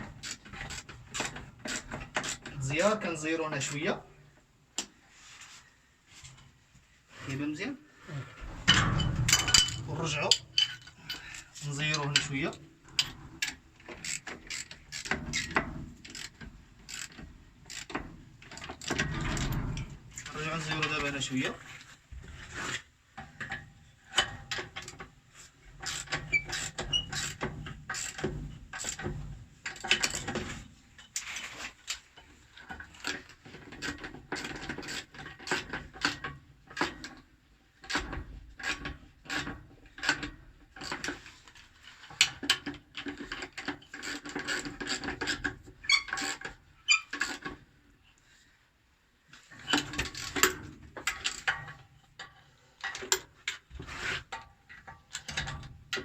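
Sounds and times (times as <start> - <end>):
wrench clicking and scraping: 0.1 - 2.6, 8.5 - 19.8, 25.8 - 32.1, 37.9 - 47.6.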